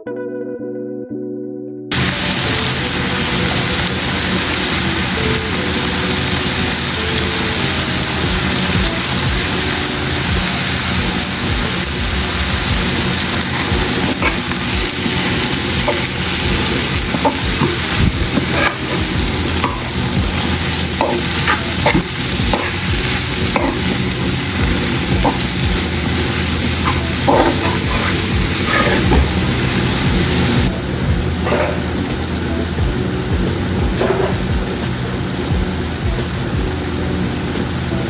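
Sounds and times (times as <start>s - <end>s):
vegetables sizzling in pot: 1.9s - 38.0s
spoon scraping and knocking pot: 13.5s - 24.0s, 25.1s - 25.9s, 26.8s - 29.6s, 31.4s - 32.0s, 33.9s - 34.5s.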